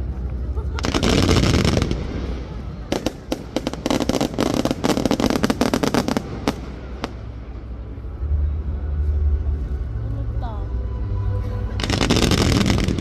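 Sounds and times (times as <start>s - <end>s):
fireworks crackling: 0.0s - 7.8s, 11.8s - 13.0s
low rumble: 0.0s - 13.0s
fireworks cracks: 0.3s - 7.4s, 11.8s - 13.0s.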